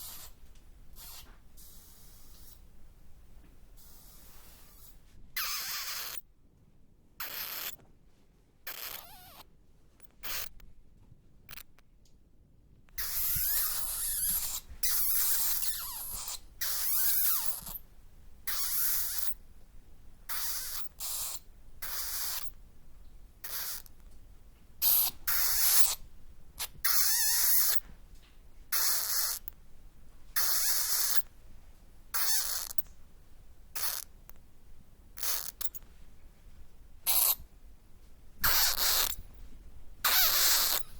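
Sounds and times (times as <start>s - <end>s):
bats chittering and squeaking: 10.2s - 10.5s, 13.0s - 17.8s, 32.2s - 32.8s, 33.8s - 34.1s, 37.1s - 37.4s, 38.4s - 39.2s, 40.0s - 40.9s.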